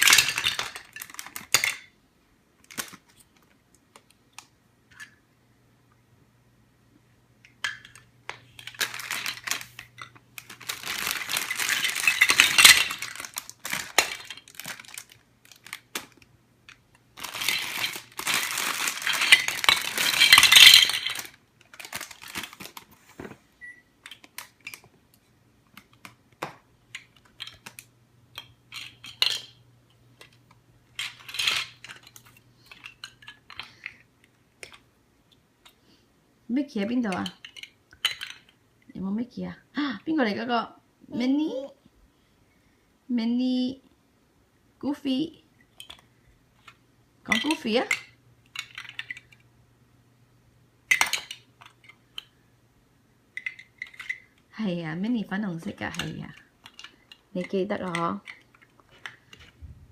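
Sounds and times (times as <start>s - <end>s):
plastic bags crinkling: 0.0s - 1.8s, 7.8s - 23.2s
plastic bricks clattering: 0.0s - 1.9s, 7.6s - 22.9s, 30.2s - 34.0s, 47.3s - 49.4s, 50.9s - 52.4s, 53.3s - 54.4s, 55.8s - 59.6s.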